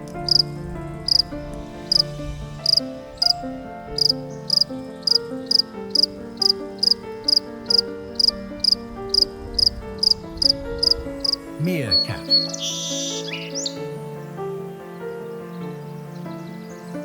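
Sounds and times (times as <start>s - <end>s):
insect chirping: 0.0s - 11.5s
soft background music: 0.0s - 17.0s.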